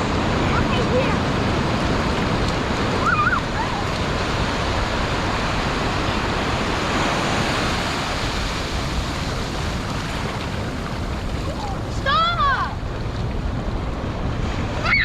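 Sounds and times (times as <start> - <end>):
ocean surf washing on shore: 0.0 - 15.0.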